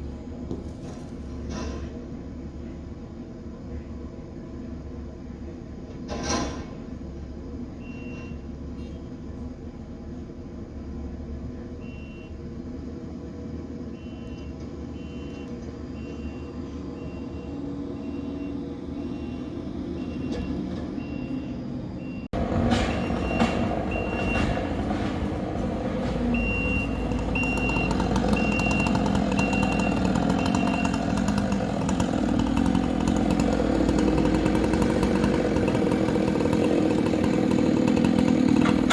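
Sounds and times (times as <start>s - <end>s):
skid steer engine running: 0.0s - 38.9s
reverse alarm beeping: 14.0s - 25.1s, 26.3s - 31.0s.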